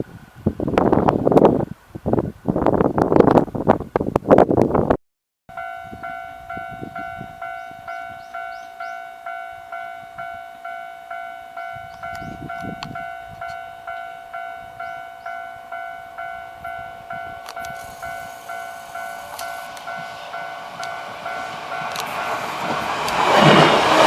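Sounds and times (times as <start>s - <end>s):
level-crossing warning bell: 5.5s - 24.0s
train arriving: 5.5s - 24.0s.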